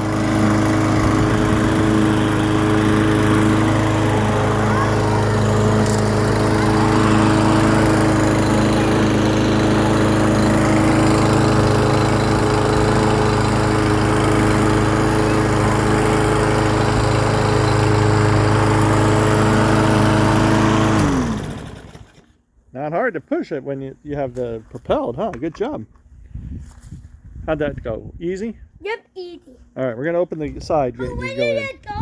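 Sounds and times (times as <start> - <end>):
lawn mower engine running: 0.0 - 22.4.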